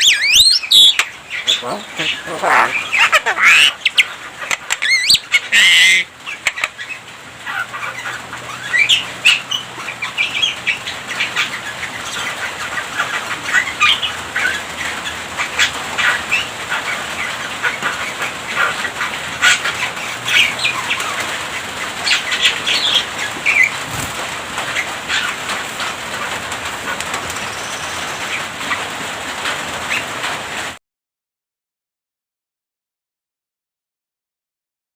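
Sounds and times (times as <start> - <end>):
myna chattering and whistling: 0.0 - 6.6.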